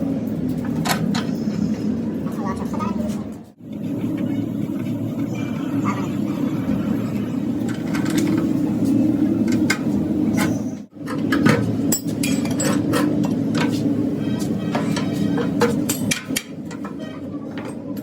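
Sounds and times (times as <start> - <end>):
low machine hum: 0.0 - 17.4.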